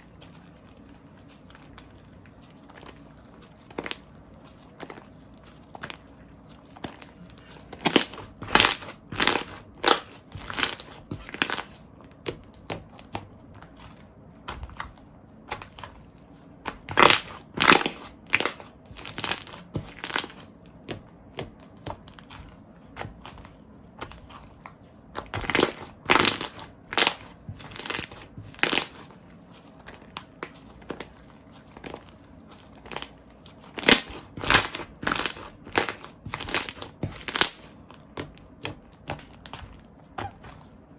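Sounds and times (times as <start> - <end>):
slime squishing: 0.0 - 40.9
slime popping and crackling: 4.7 - 13.8, 16.7 - 23.4, 25.2 - 29.1, 29.8 - 40.6.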